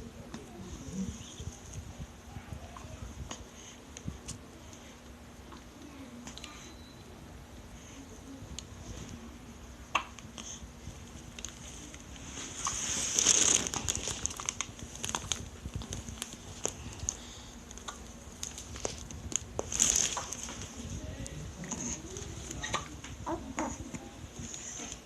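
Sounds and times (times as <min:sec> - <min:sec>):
rustling and crinkling handling noise: 0:10.8 - 0:25.0.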